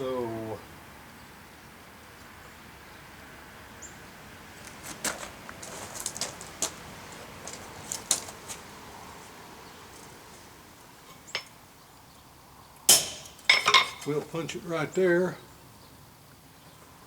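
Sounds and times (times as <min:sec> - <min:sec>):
metal tools clinking: 0:11.1 - 0:11.6, 0:12.9 - 0:14.3.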